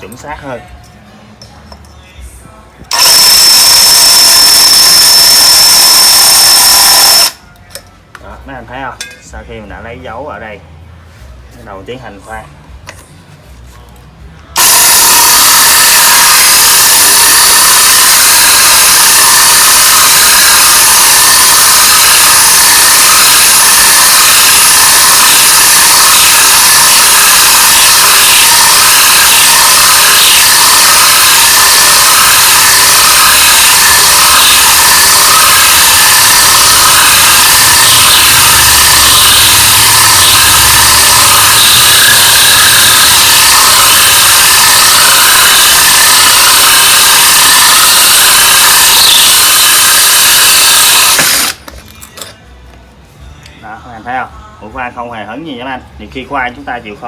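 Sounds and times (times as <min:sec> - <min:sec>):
drill boring into stone: 0:02.9 - 0:07.4, 0:14.6 - 0:51.7.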